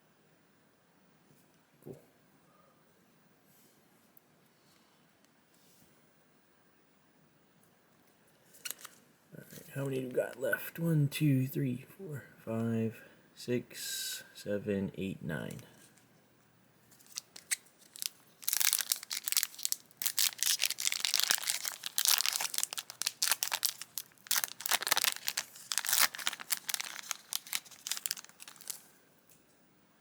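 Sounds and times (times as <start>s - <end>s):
foil wrapper crinkling and tearing: 8.6s - 9.0s, 17.0s - 28.9s.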